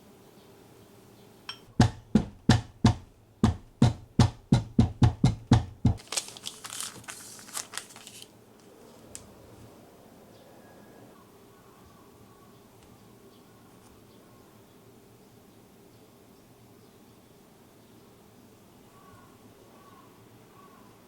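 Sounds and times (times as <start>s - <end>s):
sharp knocks: 1.7s - 6.0s
paper or plastic crinkling: 6.0s - 9.3s.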